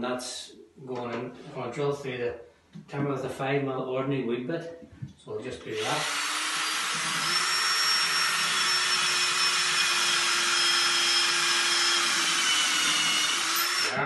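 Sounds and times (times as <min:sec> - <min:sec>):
electric drill boring through wood: 0:05.8 - 0:14.0.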